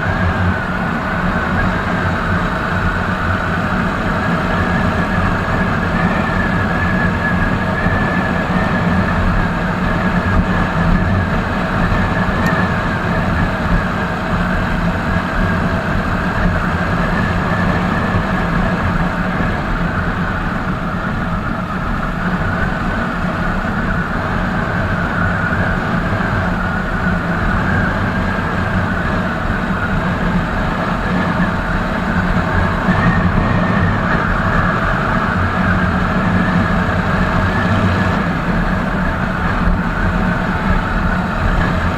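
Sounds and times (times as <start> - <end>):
motorcycle engine cruising: 0.0 - 41.9.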